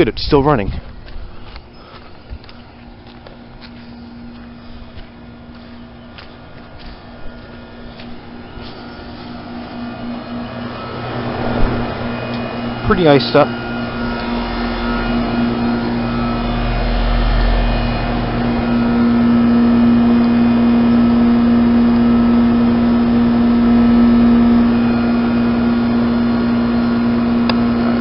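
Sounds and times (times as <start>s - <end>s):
heat pump electrical hum: 0.0s - 28.0s
fan whoosh: 6.4s - 28.0s.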